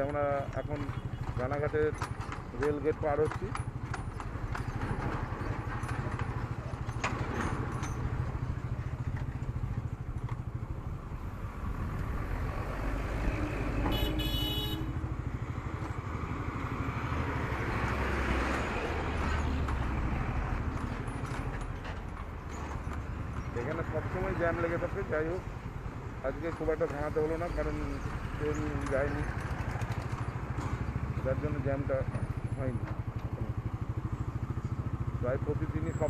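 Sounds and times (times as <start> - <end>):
road and wind noise: 0.0 - 36.0
motorcycle engine running: 29.0 - 36.0.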